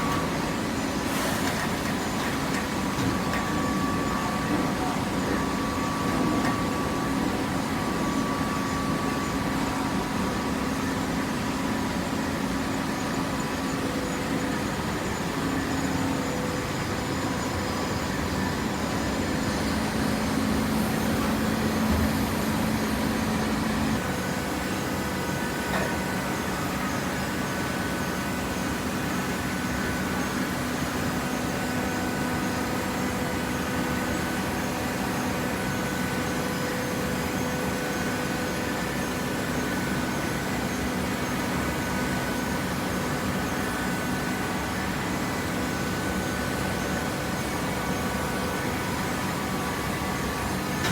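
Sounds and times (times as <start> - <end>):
baler machine hum: 17.0 - 28.6.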